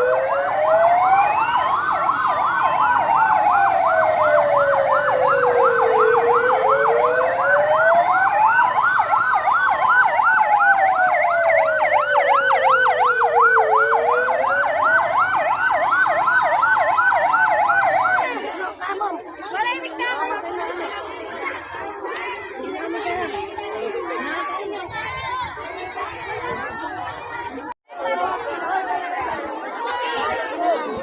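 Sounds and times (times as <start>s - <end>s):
siren wail rising and falling: 0.0s - 18.4s
siren yelp: 0.0s - 18.4s.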